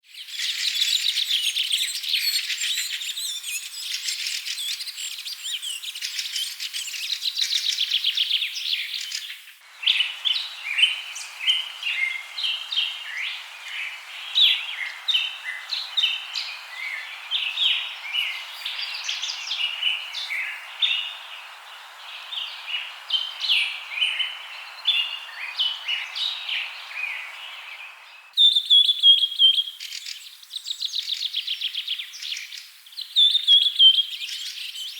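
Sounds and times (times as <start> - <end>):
songbirds chirping: 0.0 - 34.9
light hiss: 2.4 - 28.3.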